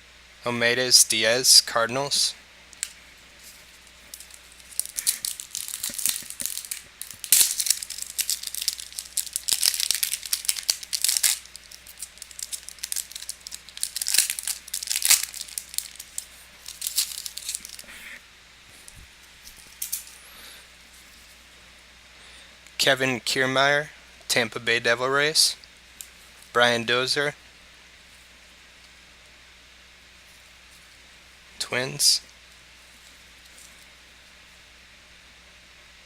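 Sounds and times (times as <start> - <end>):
foil wrapper crinkling and tearing: 2.8 - 17.9.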